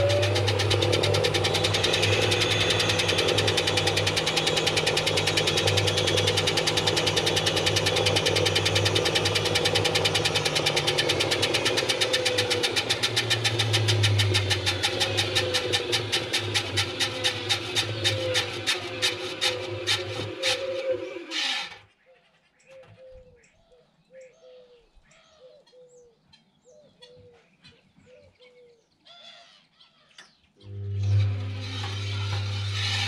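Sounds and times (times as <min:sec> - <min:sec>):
washing machine motor hum: 0:00.0 - 0:21.4, 0:30.6 - 0:33.0.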